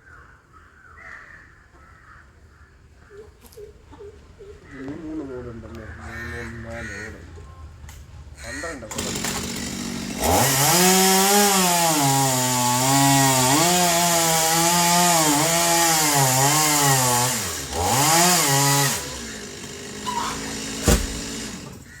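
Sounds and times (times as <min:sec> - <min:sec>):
chainsaw cutting wood: 0:08.9 - 0:22.0
sharp knock: 0:20.8 - 0:21.4.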